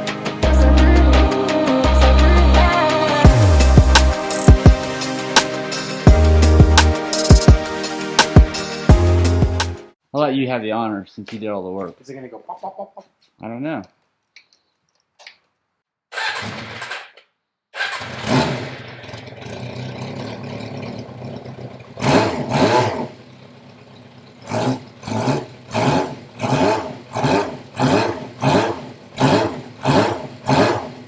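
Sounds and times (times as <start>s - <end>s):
motorcycle engine revving: 0.0s - 7.8s, 16.1s - 17.2s, 17.8s - 31.0s
engine cranking: 16.2s - 31.0s.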